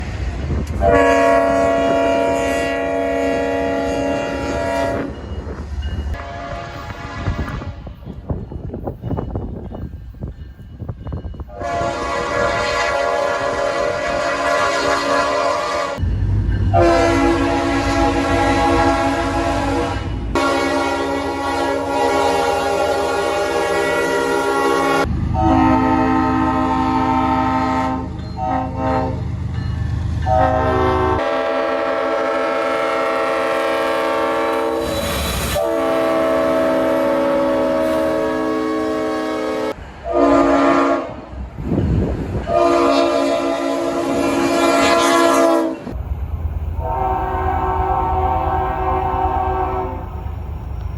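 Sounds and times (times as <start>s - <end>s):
locomotive air horn blasts: 0.8s - 5.2s, 6.2s - 8.0s, 11.5s - 16.0s, 16.7s - 29.3s, 30.2s - 41.3s, 42.4s - 46.0s, 46.8s - 50.1s.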